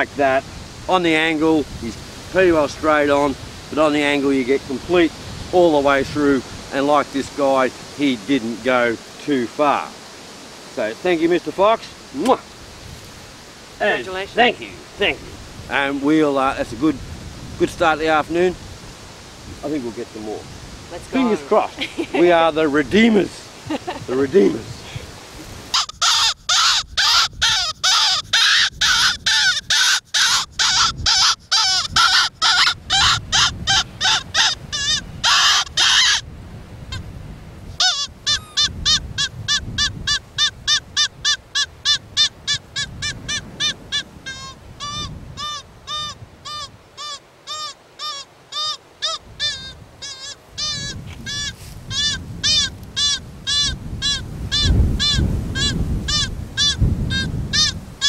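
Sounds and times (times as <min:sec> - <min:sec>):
predator call squealing: 0:25.7 - 0:36.2, 0:37.8 - 0:57.8.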